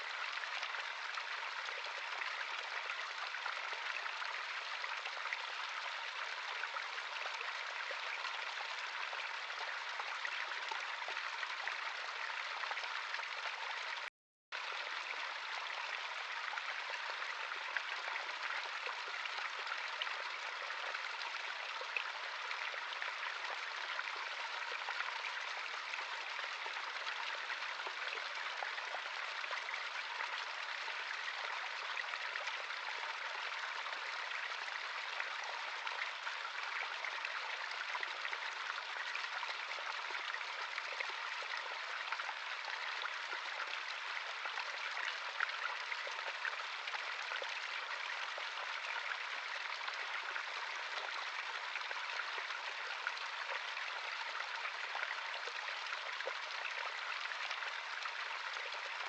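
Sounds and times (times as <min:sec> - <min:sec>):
stream flowing over stones: 0:00.0 - 0:59.0.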